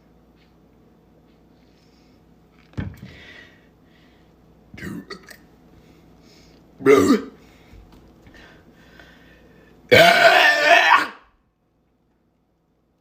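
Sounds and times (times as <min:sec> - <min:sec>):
person burping: 0:04.8 - 0:05.4, 0:06.8 - 0:07.4, 0:09.9 - 0:11.1.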